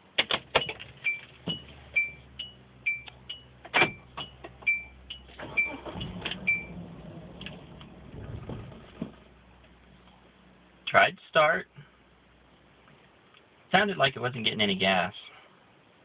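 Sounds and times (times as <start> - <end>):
car two-tone warning chime: 1.0 - 6.8.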